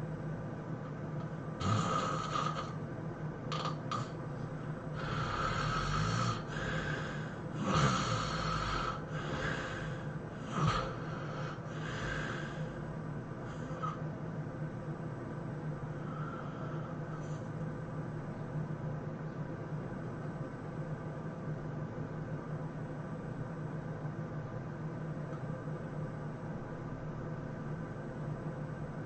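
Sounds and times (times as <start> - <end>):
person snoring heavily: 1.6 - 2.8, 3.5 - 4.1, 4.9 - 12.8, 13.4 - 14.0.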